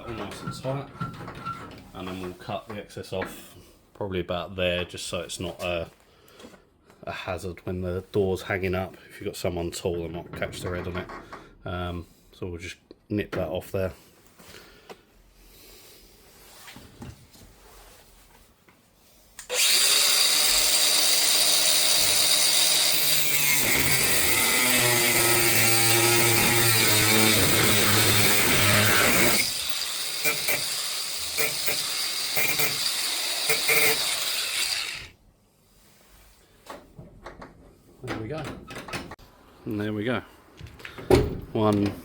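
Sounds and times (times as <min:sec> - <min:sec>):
power tool cutting metal: 0:19.4 - 0:35.1.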